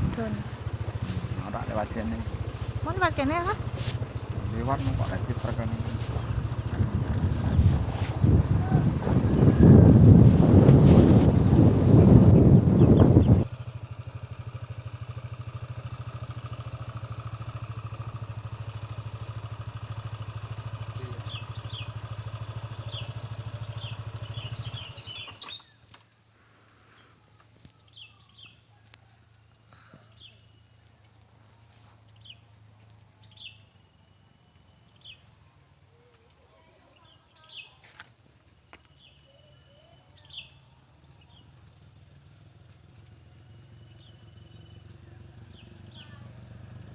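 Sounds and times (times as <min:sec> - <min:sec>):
birds chirping: 0:00.0 - 0:09.7, 0:11.4 - 0:14.0, 0:20.6 - 0:26.0, 0:26.9 - 0:31.2, 0:32.0 - 0:37.8, 0:38.5 - 0:41.6, 0:43.7 - 0:46.3
motorcycle engine idling: 0:00.0 - 0:46.9.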